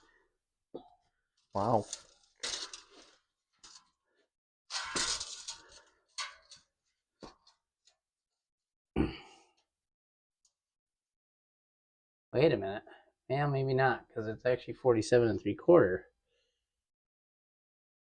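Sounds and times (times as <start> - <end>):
rustling and scraping: 1.4 - 4.0, 4.7 - 7.6.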